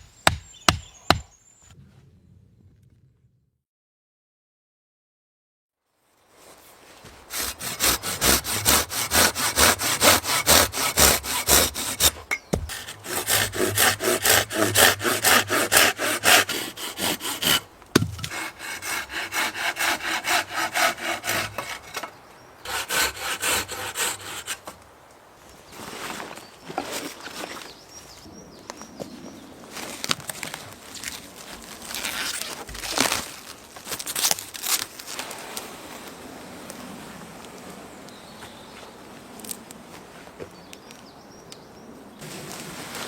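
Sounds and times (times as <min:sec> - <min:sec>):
hand saw cutting wood: 0:07.3 - 0:24.8.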